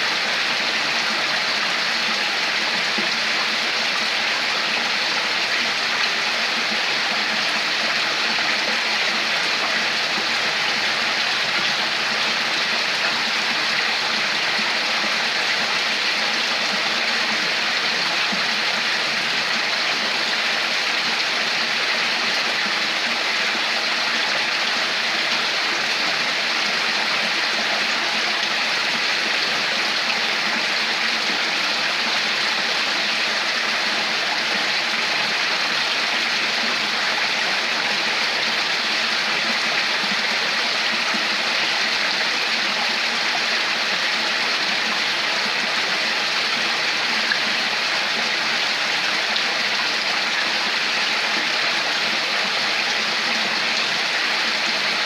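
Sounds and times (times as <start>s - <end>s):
stream babbling: 0.0s - 55.0s.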